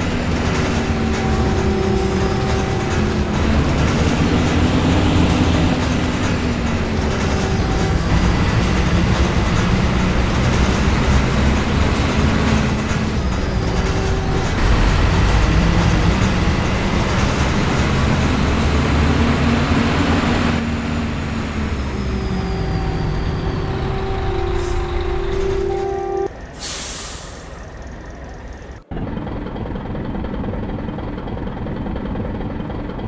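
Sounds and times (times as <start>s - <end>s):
steady whining tone: 0.0s - 26.6s
bus diesel engine running: 0.0s - 33.0s
air brakes hiss: 26.5s - 27.7s.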